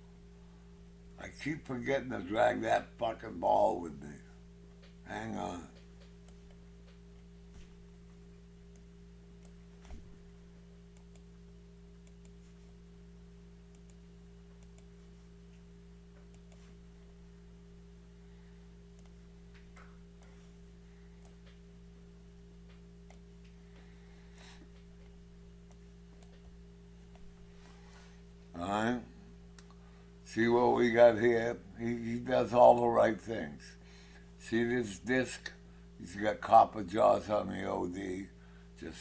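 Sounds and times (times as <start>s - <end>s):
steady electrical hum: 0.0s - 39.0s
computer mouse clicks: 11.0s - 11.3s, 13.7s - 14.0s, 14.6s - 14.9s, 16.3s - 16.7s, 19.0s - 20.3s.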